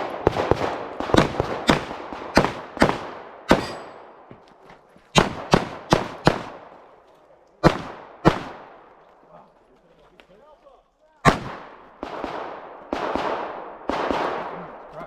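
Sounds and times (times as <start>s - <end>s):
pistol shots echoing: 0.0s - 4.3s, 5.1s - 6.8s, 7.6s - 9.0s, 11.2s - 14.9s.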